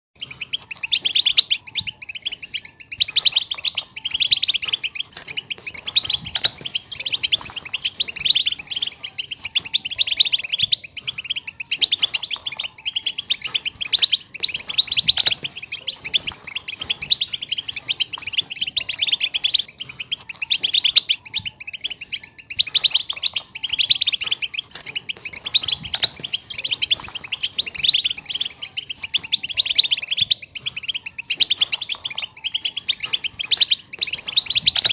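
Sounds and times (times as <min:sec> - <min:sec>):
goldfinch chattering and twittering: 0:00.2 - 0:34.9.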